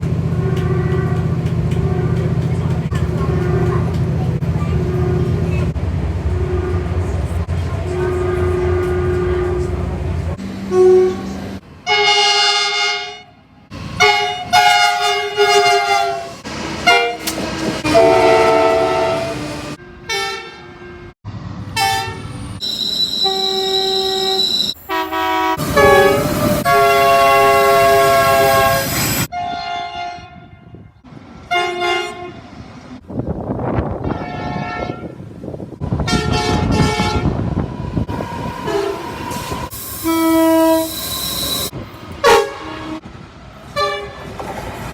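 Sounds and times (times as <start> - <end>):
faint rail and engine noise: 0.0 - 44.9
train horn blasts: 0.3 - 2.4, 3.3 - 3.8, 7.8 - 9.8, 10.6 - 13.4, 14.0 - 21.1, 21.8 - 32.5, 34.0 - 35.2, 36.0 - 37.4, 38.6 - 39.1, 39.9 - 43.1, 43.8 - 44.2.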